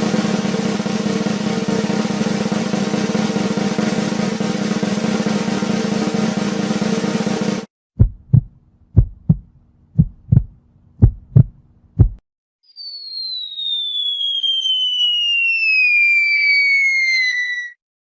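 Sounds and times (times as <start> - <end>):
heartbeat thumps: 8.0 - 12.2
long falling whistle: 12.6 - 17.8.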